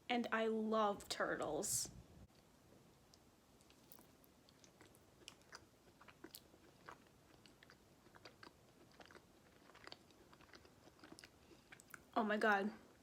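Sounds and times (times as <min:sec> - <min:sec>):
chewing soft cookie: 0:02.3 - 0:12.2.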